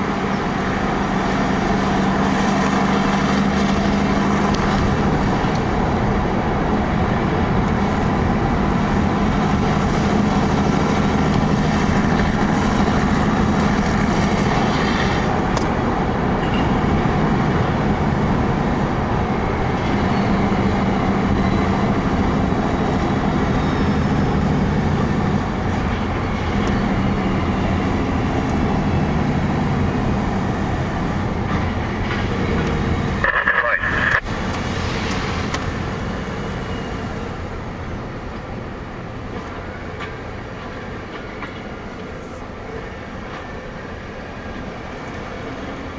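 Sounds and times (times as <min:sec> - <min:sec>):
diesel truck engine running: 0:00.0 - 0:41.5
road noise: 0:00.0 - 0:45.9.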